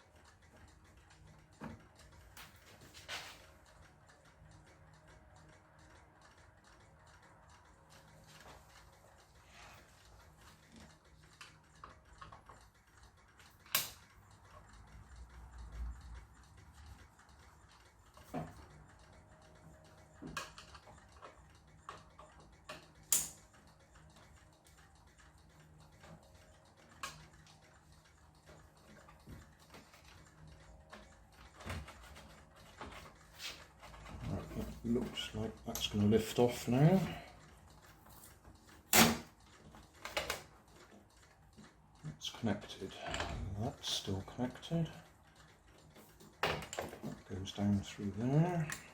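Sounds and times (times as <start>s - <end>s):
tools and parts clicking: 9.7s - 42.3s, 42.9s - 47.3s, 48.2s - 48.9s.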